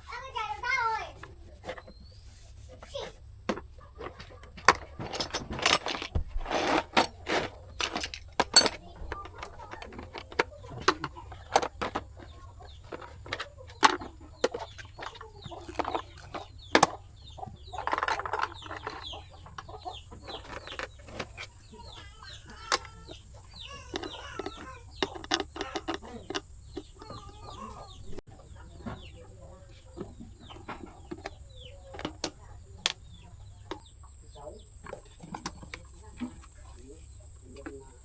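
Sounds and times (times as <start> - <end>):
hand tools clicking and knocking: 0.0 - 28.2, 29.6 - 38.0
chickens clucking: 0.0 - 38.0.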